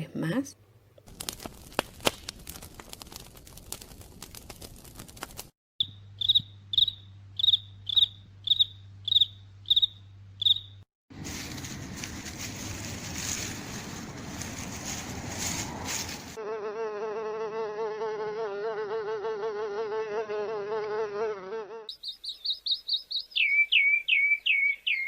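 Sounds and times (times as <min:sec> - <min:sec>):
fire crackling: 0:01.0 - 0:05.6, 0:11.1 - 0:16.4
leaves rustling: 0:01.1 - 0:05.5, 0:11.1 - 0:16.4
cricket chirping: 0:05.8 - 0:10.8.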